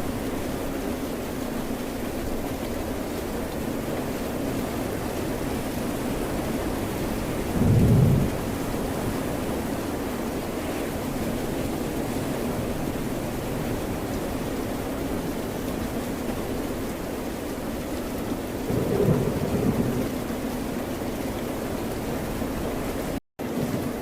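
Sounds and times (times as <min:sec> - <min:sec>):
rain: 0:00.0 - 0:24.0
wave breaking or thunder rumbling: 0:05.5 - 0:10.0, 0:18.7 - 0:20.3.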